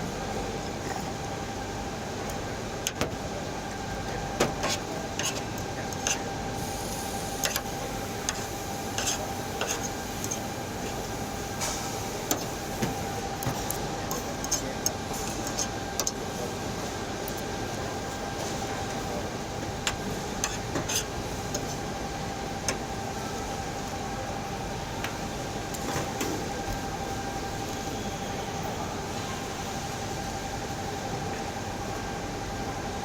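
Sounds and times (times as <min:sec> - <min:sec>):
steady fan hum: 0:00.0 - 0:33.0.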